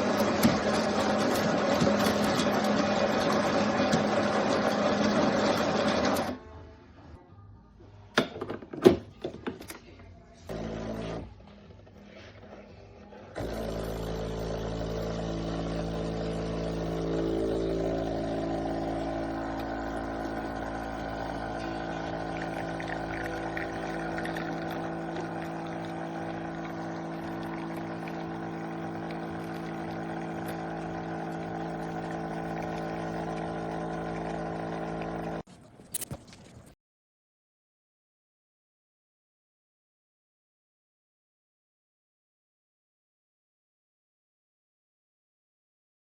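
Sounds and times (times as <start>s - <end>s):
kitchen appliance humming: 0.0s - 6.4s, 10.5s - 11.3s, 13.4s - 35.5s.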